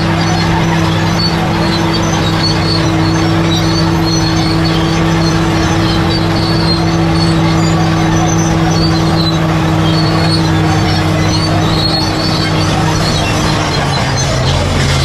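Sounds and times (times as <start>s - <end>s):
bulldozer diesel engine running: 0.0s - 15.0s
track squeaks and clinks: 0.0s - 15.0s.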